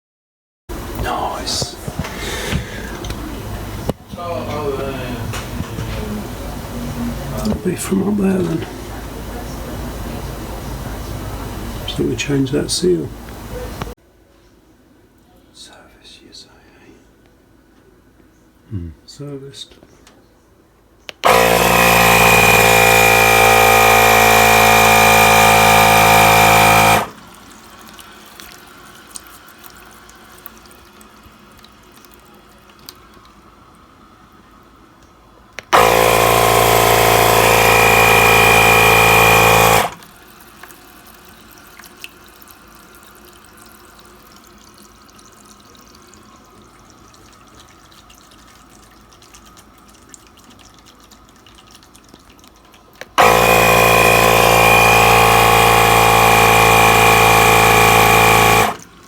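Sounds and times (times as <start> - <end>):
tap water rushing with whistle: 21.1 - 33.4, 35.6 - 49.2, 53.0 - 59.0.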